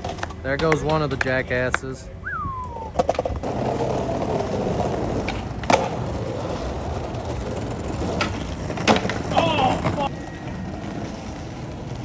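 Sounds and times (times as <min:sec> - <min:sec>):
sharp skateboard clacks: 0:00.0 - 0:01.9, 0:02.7 - 0:10.1
skateboard wheels rolling on pavement: 0:00.0 - 0:12.0.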